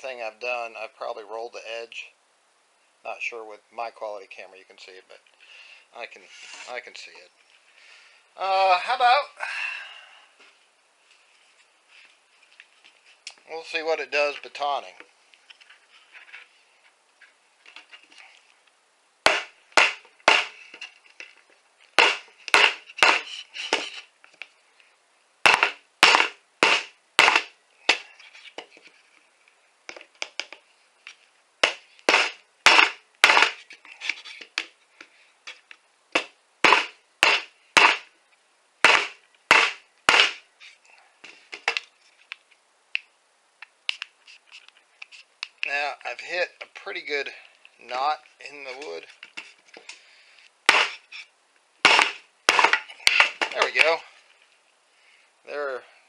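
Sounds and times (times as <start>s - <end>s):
baton knocking on knife spine: 19.3s - 20.6s, 25.5s - 28.1s, 31.6s - 33.6s, 36.2s - 38.1s, 50.7s - 51.0s, 51.8s - 53.8s.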